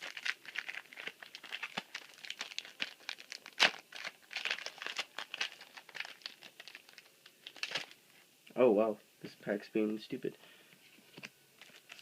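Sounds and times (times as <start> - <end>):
foil wrapper crinkling and tearing: 0.0 - 8.0, 11.6 - 12.0.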